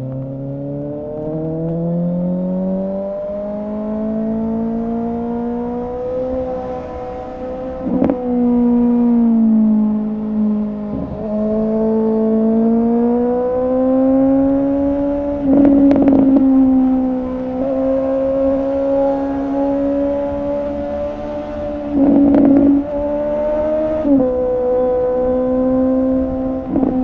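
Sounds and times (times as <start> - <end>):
motorcycle engine running: 7.6 - 27.0.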